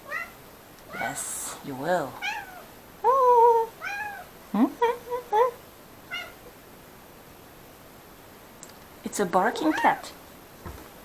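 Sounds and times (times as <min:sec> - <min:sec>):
cat meowing: 0:00.0 - 0:00.4, 0:02.2 - 0:02.7, 0:03.8 - 0:04.3, 0:06.1 - 0:06.5.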